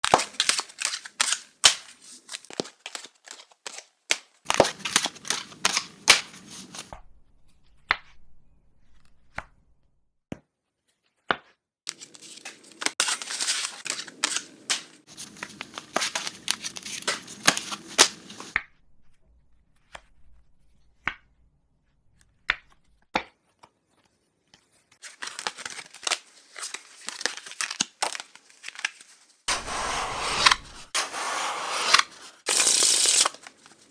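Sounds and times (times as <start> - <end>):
playing cards shuffling: 18.6 - 22.9, 29.5 - 32.8
single card snaps: 18.6 - 22.9.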